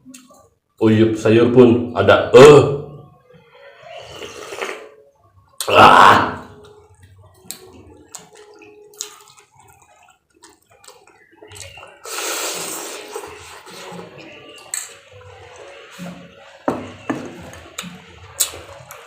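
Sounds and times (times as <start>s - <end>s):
loud slurp of soup: 3.7s - 5.0s, 12.0s - 13.9s
wet eating smacks: 7.0s - 13.8s.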